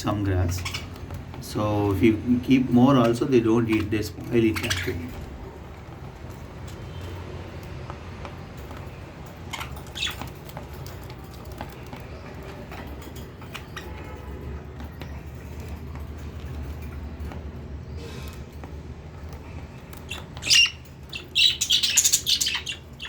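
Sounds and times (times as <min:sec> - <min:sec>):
birds pecking and rustling: 0:00.0 - 0:23.0
squeaky bird chirps: 0:00.5 - 0:01.0, 0:04.4 - 0:05.2, 0:09.4 - 0:10.4, 0:13.2 - 0:14.2, 0:20.0 - 0:23.0.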